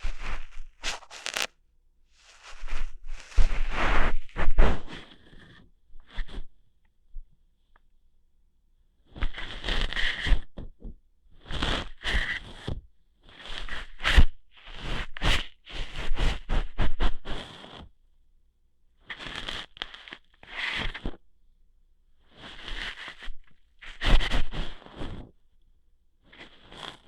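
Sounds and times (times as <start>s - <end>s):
crackly scratching and snapping: 0.0s - 1.5s, 2.2s - 5.5s.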